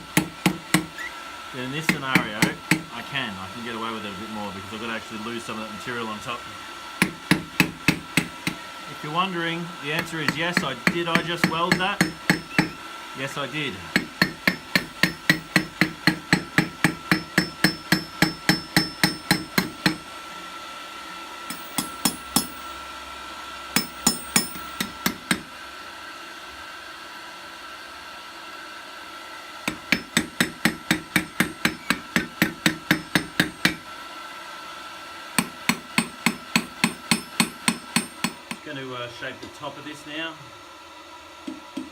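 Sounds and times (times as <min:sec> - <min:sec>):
hammer striking hot steel: 0:10.3 - 0:12.8, 0:13.9 - 0:20.0, 0:21.5 - 0:22.8, 0:23.8 - 0:25.5, 0:29.7 - 0:33.8, 0:35.4 - 0:38.6.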